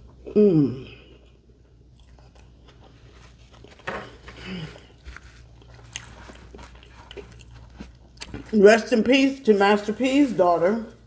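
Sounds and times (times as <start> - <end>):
chewing and biting sandwich: 1.1 - 8.6.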